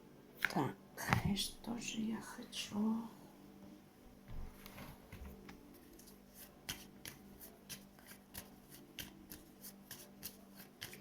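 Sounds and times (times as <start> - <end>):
cards being shuffled by hand: 4.5 - 11.0.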